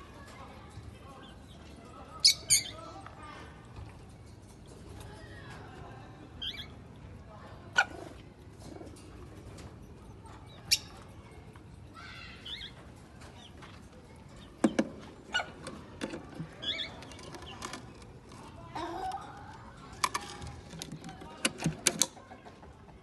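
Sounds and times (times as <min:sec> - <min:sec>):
birds chirping: 0:01.0 - 0:03.0, 0:09.4 - 0:11.4, 0:12.0 - 0:19.3.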